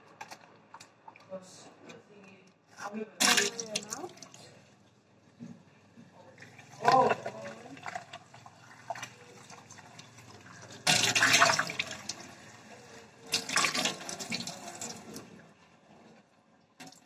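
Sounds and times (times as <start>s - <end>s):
water splashing in sink: 3.2s - 4.6s, 6.3s - 15.3s.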